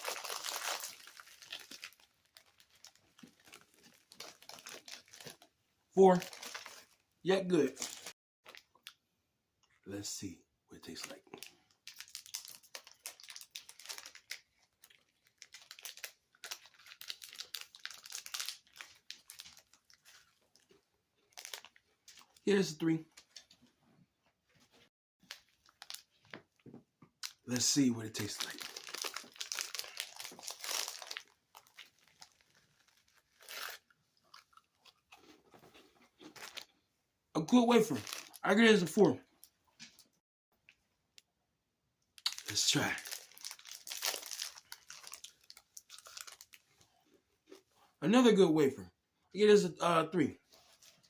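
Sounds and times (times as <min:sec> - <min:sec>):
plastic wrapper crinkling: 0:00.0 - 0:05.5, 0:06.1 - 0:07.0, 0:07.7 - 0:08.9, 0:11.4 - 0:22.4, 0:25.2 - 0:34.7, 0:36.2 - 0:36.7, 0:37.9 - 0:38.4, 0:42.2 - 0:47.0
chewing crisp wafer: 0:28.5 - 0:36.7, 0:42.2 - 0:47.6.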